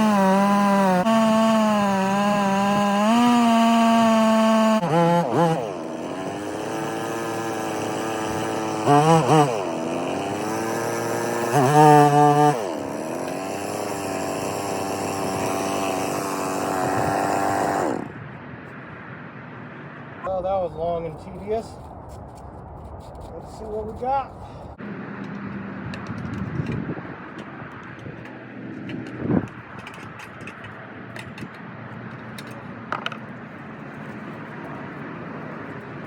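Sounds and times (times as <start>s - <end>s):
chainsaw cutting log: 0.0s - 18.2s, 25.3s - 30.6s.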